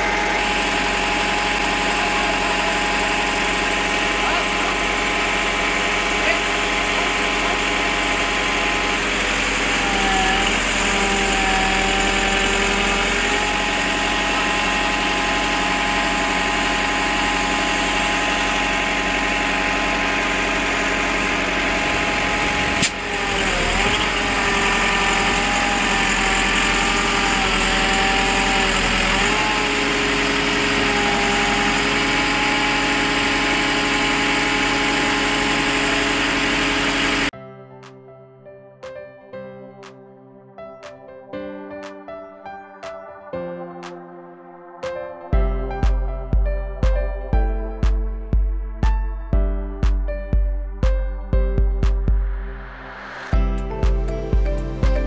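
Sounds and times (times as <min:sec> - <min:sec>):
engine running steadily: 0:00.0 - 0:37.3.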